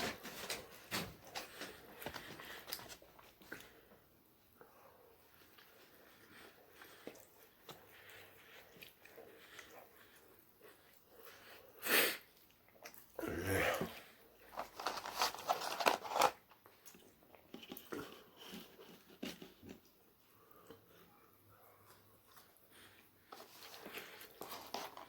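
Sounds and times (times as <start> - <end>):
person chewing: 5.3 - 15.0, 15.8 - 25.0
food crunching and crackling: 12.2 - 20.9, 21.8 - 25.0.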